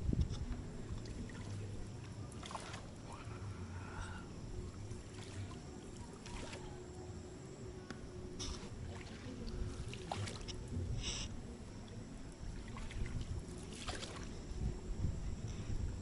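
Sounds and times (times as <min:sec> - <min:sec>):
low water rumble: 0:00.0 - 0:16.0
light splashes and knocks: 0:02.3 - 0:02.9, 0:08.5 - 0:10.9, 0:12.7 - 0:14.3
hissing splashes: 0:02.3 - 0:03.3, 0:08.4 - 0:11.3, 0:12.6 - 0:14.3.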